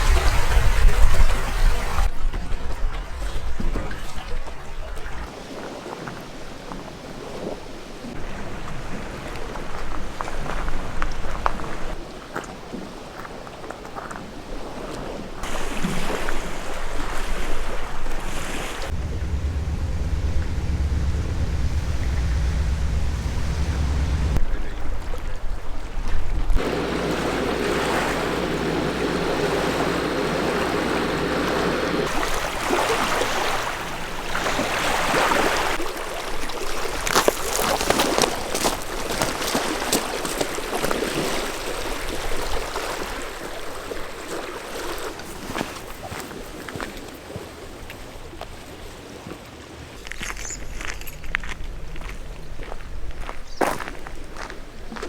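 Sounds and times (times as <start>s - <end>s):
rushing water: 0.0s - 2.1s, 26.6s - 46.4s
wind buffeting microphone: 18.8s - 24.5s, 26.3s - 35.8s
steady low hum: 18.9s - 24.4s, 26.6s - 34.8s.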